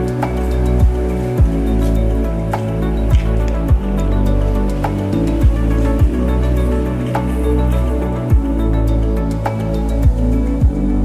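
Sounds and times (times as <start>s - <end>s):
slow new-age music: 0.0s - 11.0s.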